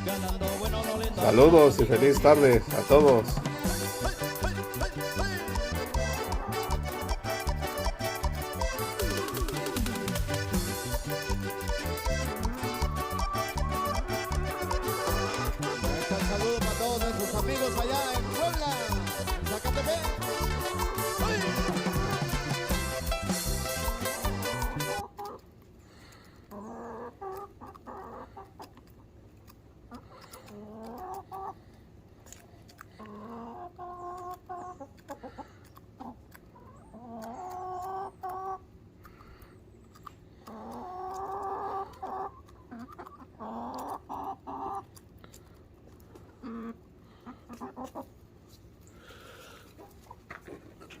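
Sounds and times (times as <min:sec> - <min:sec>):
chickens clucking: 0:00.0 - 0:51.0.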